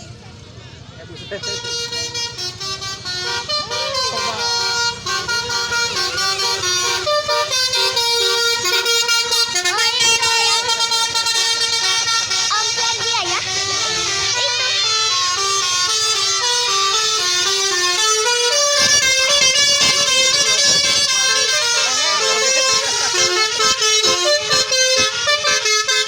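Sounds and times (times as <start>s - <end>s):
bus multi-tone horn melody: 1.0s - 26.0s.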